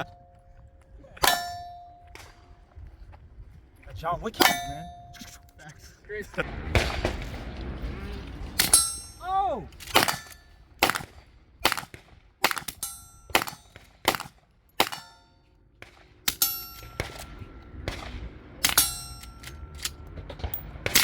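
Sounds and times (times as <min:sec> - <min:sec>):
bullets striking steel targets: 0:01.2 - 0:02.5, 0:04.3 - 0:05.4, 0:08.6 - 0:21.0
gunshots: 0:06.4 - 0:09.2, 0:09.8 - 0:15.2, 0:15.8 - 0:19.6, 0:20.4 - 0:21.0.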